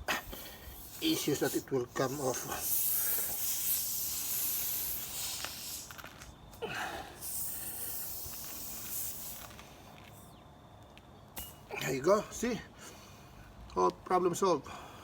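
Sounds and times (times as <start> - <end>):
air hissing from tyre: 0.0 - 10.4, 11.4 - 11.8.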